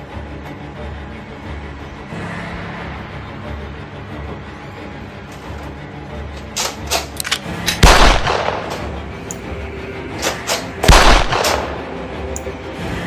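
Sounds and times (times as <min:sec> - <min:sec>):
background music: 0:00.0 - 0:13.0
sharp clicks and knocks: 0:05.3 - 0:09.5, 0:10.2 - 0:12.5
loud gunshots: 0:07.8 - 0:09.0, 0:10.2 - 0:12.0.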